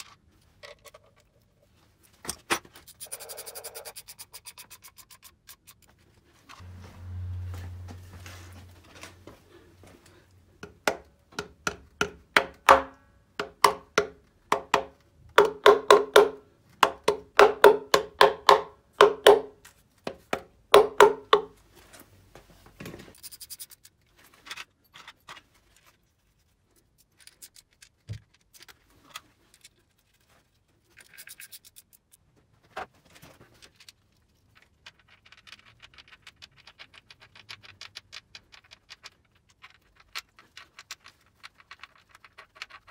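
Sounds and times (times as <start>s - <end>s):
tools scraping: 2.2s - 6.8s.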